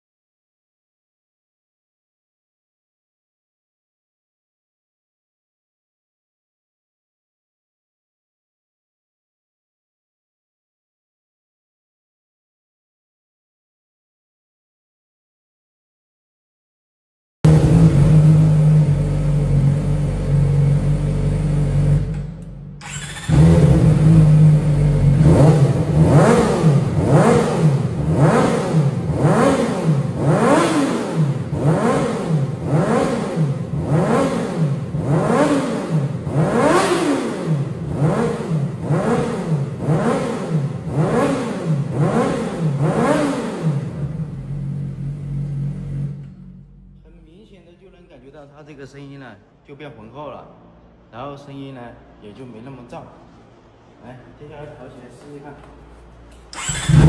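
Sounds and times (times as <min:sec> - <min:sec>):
motorcycle engine revving: 0:17.5 - 0:47.0, 0:56.5 - 0:57.0.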